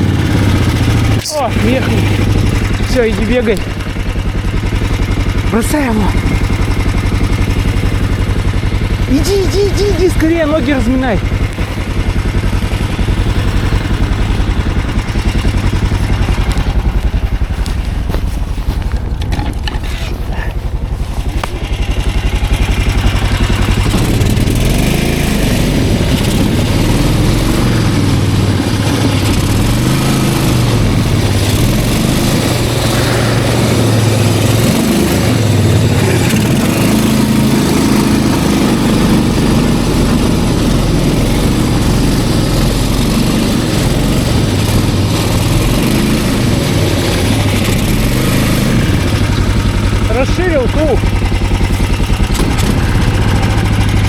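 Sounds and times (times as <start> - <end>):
snowmobile engine revving: 0.0 - 54.0.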